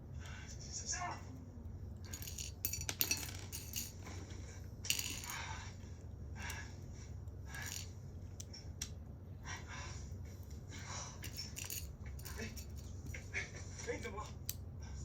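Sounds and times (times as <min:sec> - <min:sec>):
light clinks and rattles: 0:02.0 - 0:05.6, 0:07.5 - 0:08.0, 0:11.2 - 0:13.4.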